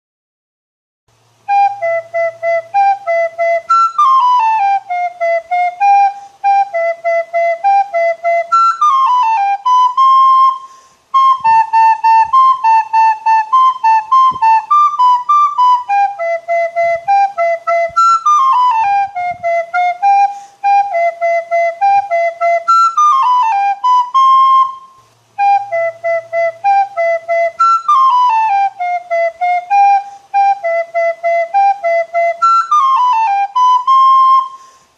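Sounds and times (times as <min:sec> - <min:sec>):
solo flute melody: 0:01.2 - 0:34.9.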